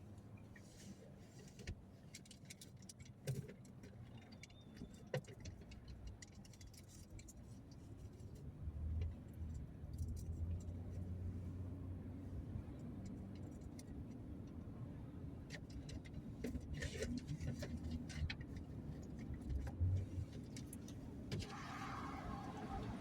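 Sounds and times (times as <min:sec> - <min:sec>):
vehicle rumbling: 0:00.0 - 0:23.0
light clicks and rattles: 0:01.4 - 0:10.8.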